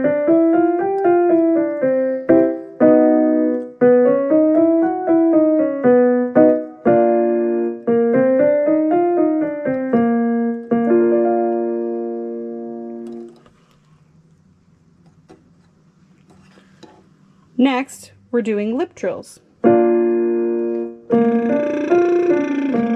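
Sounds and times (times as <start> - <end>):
piano playing scales and chords: 0.0 - 13.4, 19.6 - 22.9.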